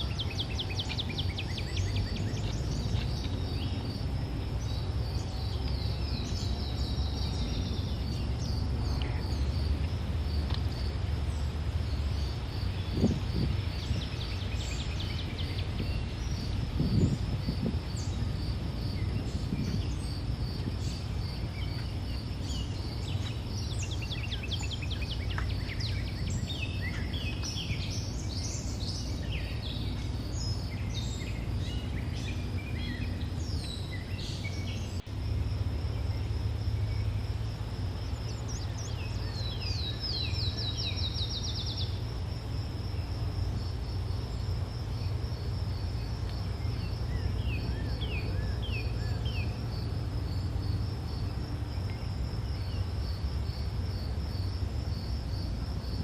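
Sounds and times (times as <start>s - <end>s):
birds calling: 0.0s - 35.1s
insects chirring: 0.0s - 56.0s.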